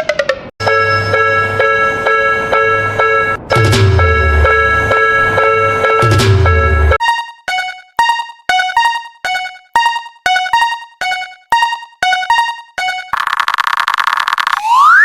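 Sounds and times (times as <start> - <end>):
railroad crossing bell ringing: 0.6 - 7.0
steady buzzing tone: 0.6 - 7.0.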